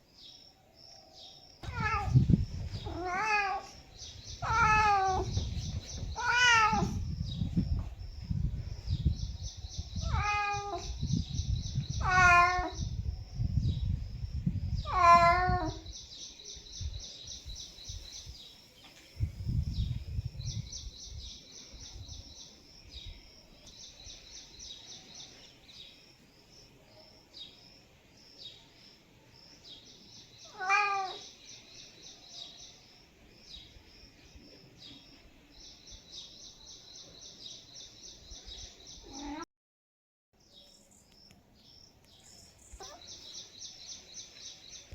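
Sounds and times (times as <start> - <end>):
cat meowing: 1.6 - 2.2, 2.8 - 3.8, 4.4 - 5.4, 6.2 - 7.0, 10.0 - 10.9, 12.0 - 12.8, 14.8 - 15.9, 30.5 - 31.2, 39.0 - 39.4, 42.8 - 43.1.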